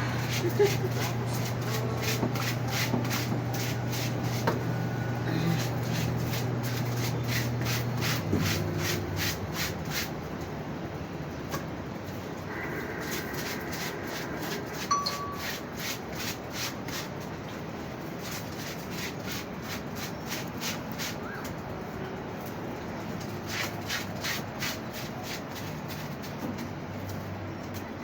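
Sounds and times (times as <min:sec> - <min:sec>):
laundry scrubbed by hand: 0:00.2 - 0:04.6, 0:05.4 - 0:10.2
short beep: 0:14.9 - 0:15.7.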